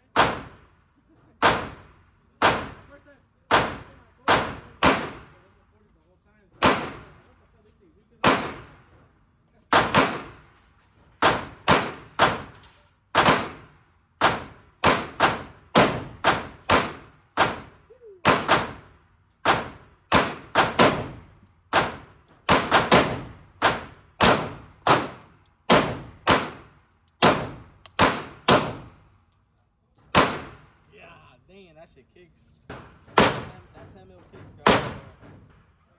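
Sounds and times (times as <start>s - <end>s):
gunshots with ringing echo: 0.1s - 0.7s, 1.4s - 2.9s, 3.5s - 5.3s, 6.6s - 7.2s, 8.2s - 8.8s, 9.7s - 10.4s, 11.2s - 18.8s, 19.4s - 29.0s, 30.1s - 30.7s, 32.7s - 33.5s, 34.6s - 35.2s.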